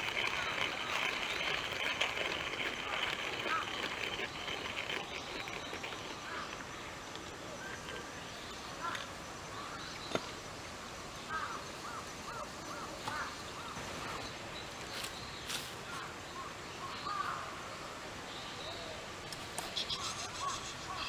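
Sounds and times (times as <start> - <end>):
bird calling: 0.0 - 10.4, 19.6 - 21.0
steady background hiss: 6.1 - 21.0.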